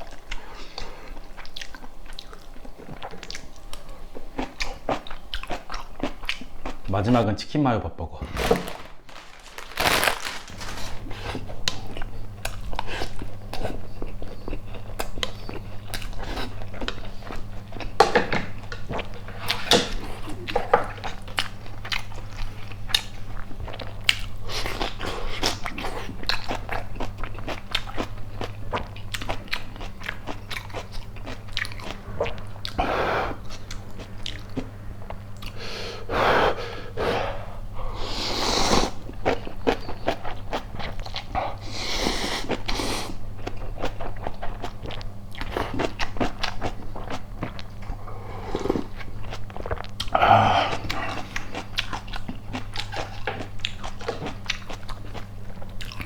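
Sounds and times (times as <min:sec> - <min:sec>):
chewing and biting food: 0:00.0 - 0:06.9, 0:08.4 - 0:35.6, 0:38.8 - 0:56.0
low steady hum: 0:00.0 - 0:38.0.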